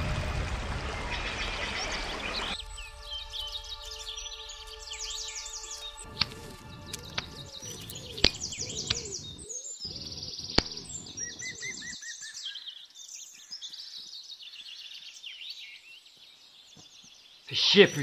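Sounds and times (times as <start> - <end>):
low background rumble: 0.0 - 9.4
bird chirps and trills: 0.8 - 13.9.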